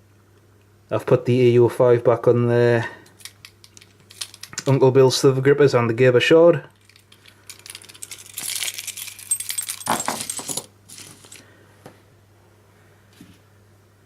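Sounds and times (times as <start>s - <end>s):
keychain jingling: 6.8s - 11.4s.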